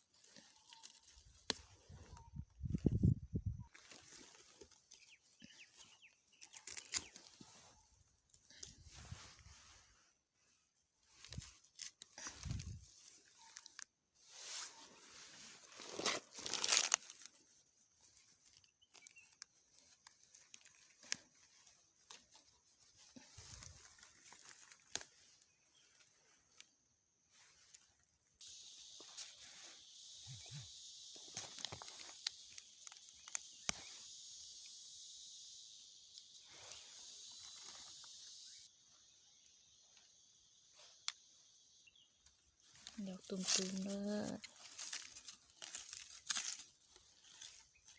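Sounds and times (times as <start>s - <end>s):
dry leaves rustling and tearing: 0.0s - 2.0s, 3.8s - 7.8s, 11.0s - 25.4s, 42.6s - 47.9s
high insect drone: 28.2s - 47.9s.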